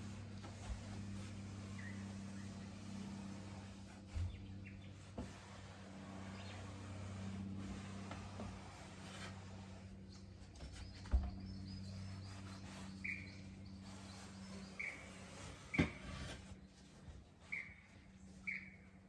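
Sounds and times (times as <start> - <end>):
steady low hum: 0.0 - 19.0
bird chirping: 10.1 - 16.0, 17.5 - 18.9.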